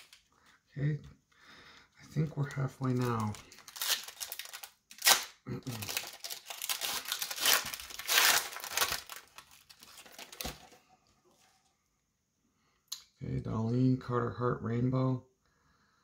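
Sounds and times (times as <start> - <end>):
foil wrapper crinkling: 0.0 - 0.3, 2.5 - 10.8
foil wrapper ripping: 2.8 - 10.6.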